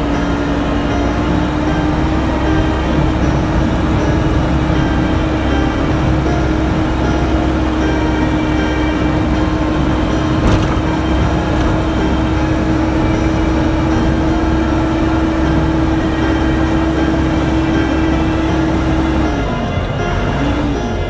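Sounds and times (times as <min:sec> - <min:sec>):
constant hum: 0:00.0 - 0:21.0
diesel engine running: 0:00.0 - 0:21.0
sharp knock: 0:10.4 - 0:11.0.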